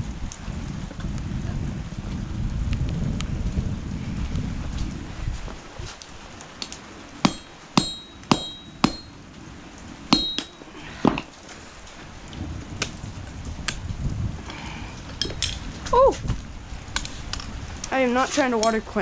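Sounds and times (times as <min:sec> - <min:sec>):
forging hammer striking steel: 0:07.2 - 0:09.3, 0:10.1 - 0:10.7, 0:18.6 - 0:19.0.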